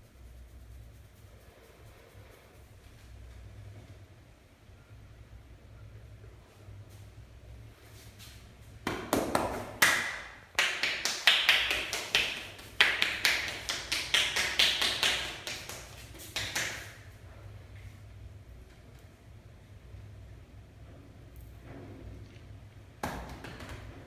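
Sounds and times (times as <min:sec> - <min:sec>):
hands tapping and slapping body: 0:08.8 - 0:17.1, 0:23.0 - 0:24.0.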